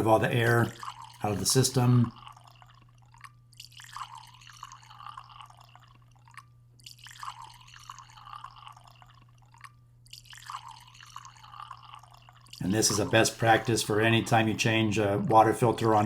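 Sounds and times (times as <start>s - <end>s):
water splashing into bucket: 0.0s - 5.3s, 6.8s - 14.4s
steady low hum: 0.0s - 16.0s.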